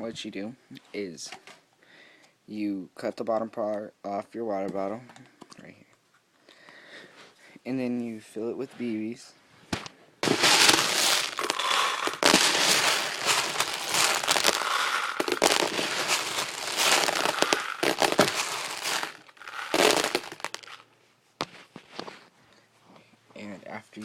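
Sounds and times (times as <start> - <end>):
plastic pellets rattling into plastic: 10.2 - 20.8.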